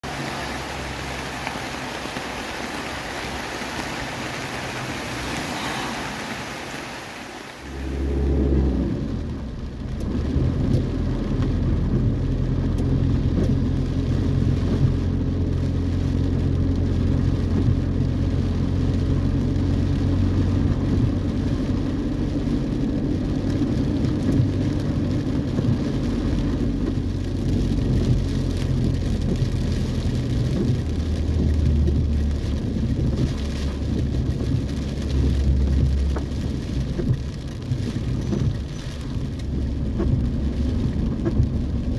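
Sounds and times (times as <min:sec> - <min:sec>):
heavy rain falling: 0:00.0 - 0:41.9
steady low drone: 0:07.6 - 0:10.0.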